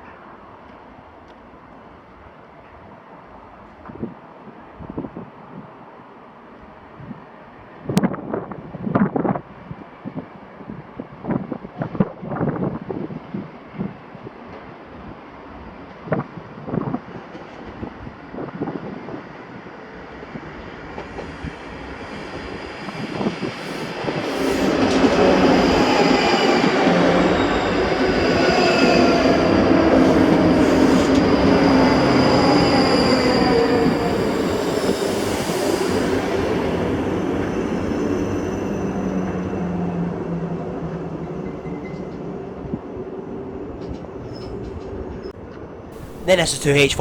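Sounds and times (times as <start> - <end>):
electric train pulling in: 20.4 - 41.4.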